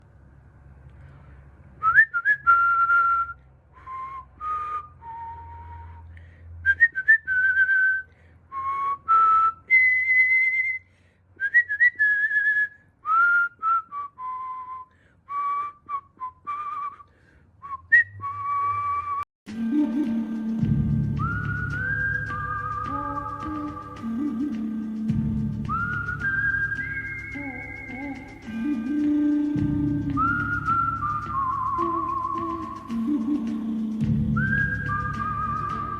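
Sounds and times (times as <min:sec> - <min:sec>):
breathing: 0:00.9 - 0:01.7, 0:05.9 - 0:06.6, 0:08.1 - 0:08.5, 0:10.8 - 0:11.3, 0:14.9 - 0:15.3, 0:17.0 - 0:17.6
person whistling a melody: 0:01.8 - 0:35.9.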